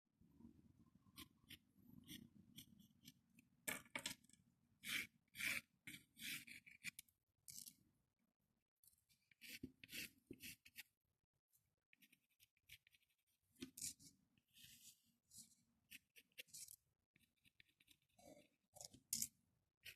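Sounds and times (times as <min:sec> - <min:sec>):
drawing tool scratching cardboard: 0:04.8 - 0:07.0, 0:09.2 - 0:10.9, 0:11.9 - 0:13.3, 0:15.9 - 0:16.6, 0:17.2 - 0:18.7.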